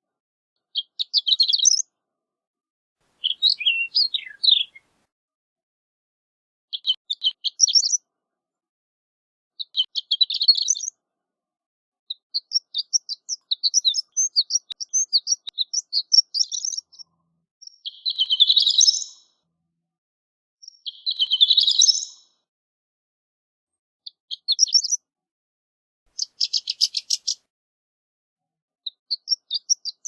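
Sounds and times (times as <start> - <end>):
lark singing: 0.8 - 1.9, 3.2 - 4.9, 6.8 - 8.0, 12.1 - 19.2, 20.6 - 22.2, 24.1 - 25.0, 26.1 - 27.5, 28.9 - 30.0.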